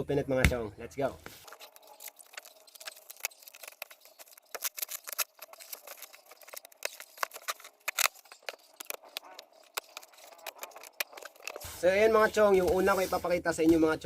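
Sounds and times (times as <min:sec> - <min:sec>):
parcel being cut and torn open: 0:01.4 - 0:11.8.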